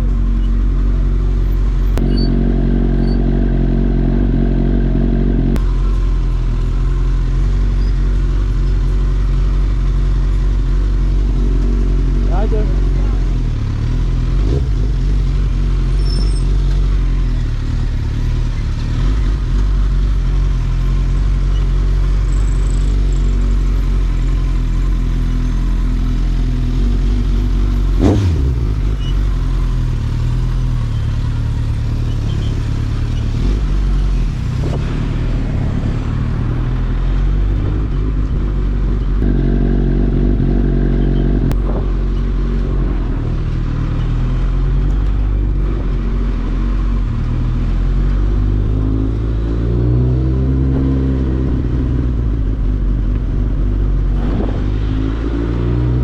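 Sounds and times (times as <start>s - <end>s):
motorcycle engine running: 0.0s - 56.0s
exhaust pop: 41.4s - 42.0s, 52.4s - 55.2s.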